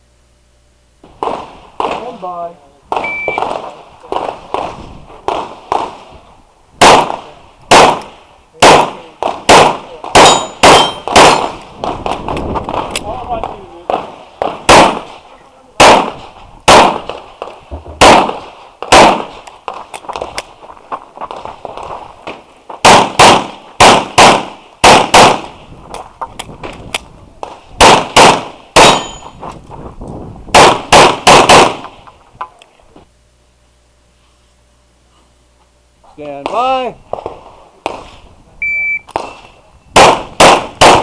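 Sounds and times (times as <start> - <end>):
pistol shots: 1.2 - 6.1, 6.8 - 15.2, 15.8 - 20.3, 22.8 - 25.6, 27.4 - 29.2, 30.5 - 32.0, 40.0 - 41.0.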